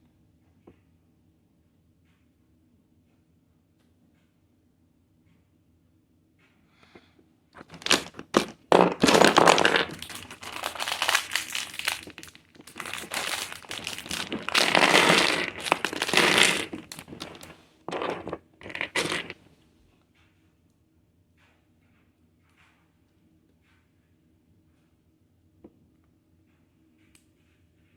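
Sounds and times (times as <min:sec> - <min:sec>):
plastic bricks rustling and clattering: 0:07.6 - 0:19.4.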